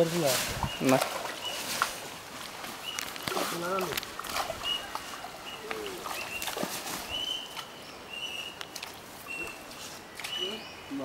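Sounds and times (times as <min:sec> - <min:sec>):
bird whistled call: 0:07.1 - 0:08.6.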